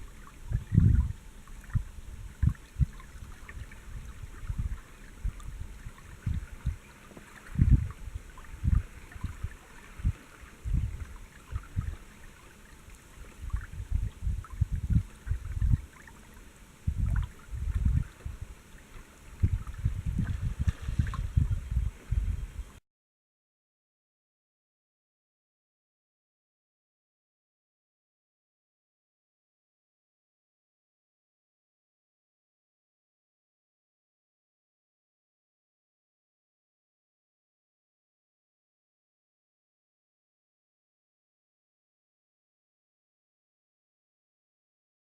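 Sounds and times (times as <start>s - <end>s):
faint water gurgle: 0.0s - 22.8s
water slapping boat hull: 0.0s - 22.8s.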